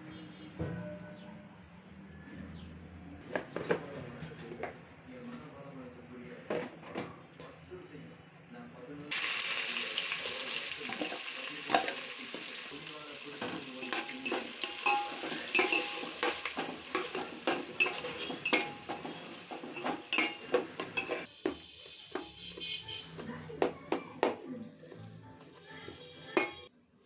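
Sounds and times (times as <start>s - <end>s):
food sizzling in oil: 9.1s - 21.3s
spoon scraping pan: 13.4s - 23.0s, 24.2s - 26.7s.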